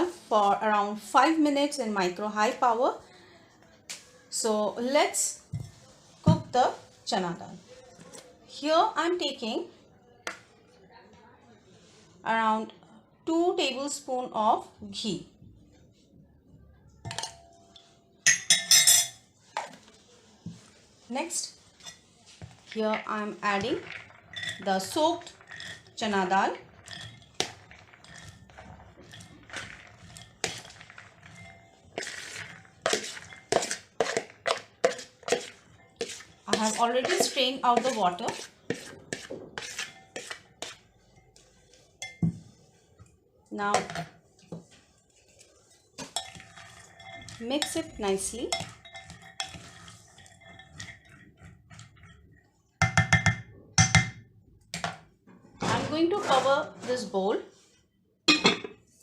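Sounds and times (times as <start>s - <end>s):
spoon scraping in bowl: 5.5s - 6.1s, 17.1s - 19.8s, 20.4s - 42.9s, 45.2s - 54.0s, 56.1s - 57.1s
spoon tapping bowl: 48.4s - 51.8s, 52.8s - 54.2s
spoon knocking against bowl: 52.8s - 54.2s.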